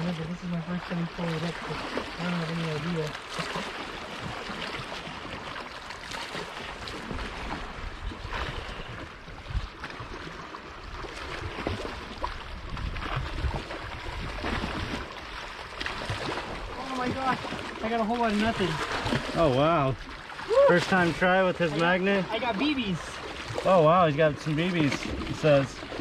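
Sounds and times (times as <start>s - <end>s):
water lapping: 0.0s - 26.0s
wind rumbling on microphone: 6.3s - 21.1s.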